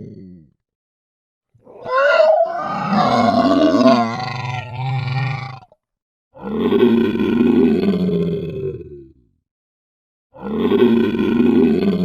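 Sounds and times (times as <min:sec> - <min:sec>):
dinosaur growling roars: 0:01.6 - 0:05.8.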